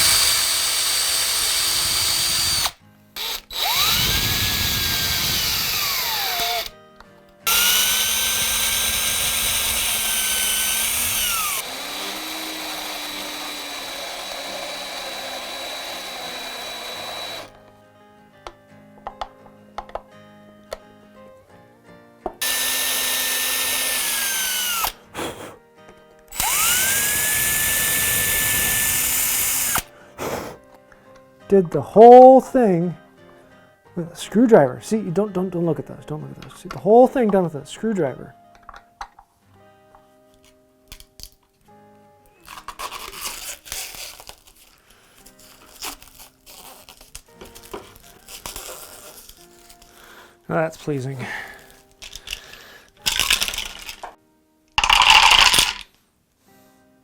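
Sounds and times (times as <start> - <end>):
cordless drill running: 0.0 - 6.7, 7.5 - 17.5, 22.4 - 25.0, 26.3 - 29.9
background music: 0.0 - 57.0
crinkling and tearing handling noises: 42.4 - 50.2.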